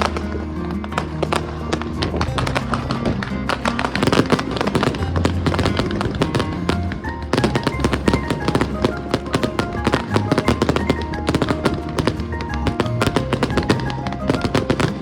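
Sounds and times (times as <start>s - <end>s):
background music with bass line: 0.0s - 15.0s
fireworks crackling: 0.0s - 15.0s.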